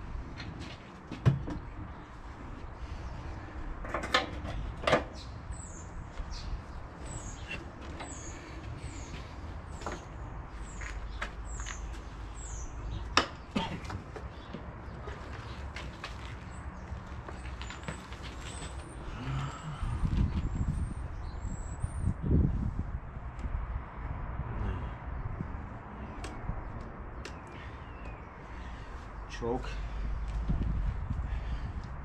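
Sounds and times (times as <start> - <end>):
bird chirping: 5.1 - 13.6, 27.1 - 29.2
low rumbling: 19.0 - 27.7.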